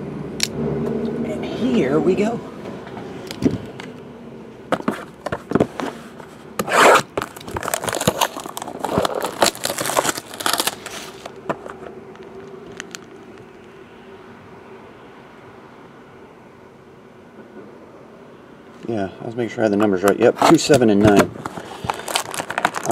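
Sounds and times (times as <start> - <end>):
packaging tearing and crinkling: 6.6 - 13.5, 20.4 - 22.9.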